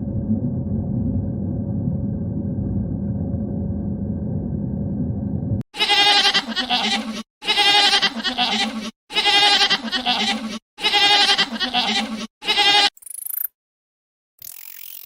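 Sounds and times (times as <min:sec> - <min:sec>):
young farm animal bleating: 0:05.8 - 0:12.9.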